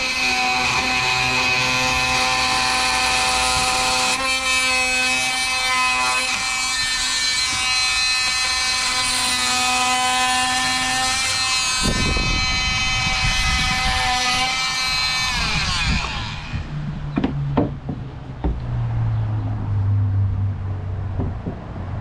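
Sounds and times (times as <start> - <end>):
power tool motor whining: 0.0 - 17.1.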